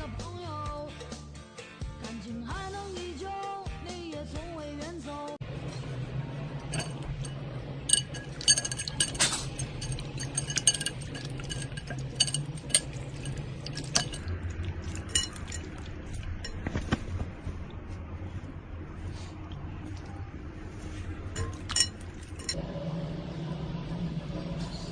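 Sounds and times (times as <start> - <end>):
steady low hum: 5.4 - 24.9
hard objects clicking and clinking: 6.6 - 16.8, 21.4 - 22.6.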